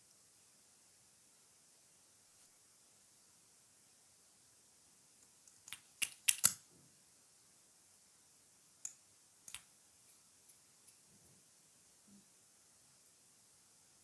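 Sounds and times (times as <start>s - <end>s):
sharp clicks: 5.5s - 6.6s.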